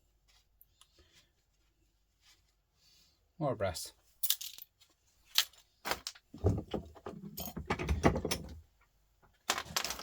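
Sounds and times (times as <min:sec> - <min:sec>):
metal scrap clattering and knocking: 0:06.4 - 0:08.6.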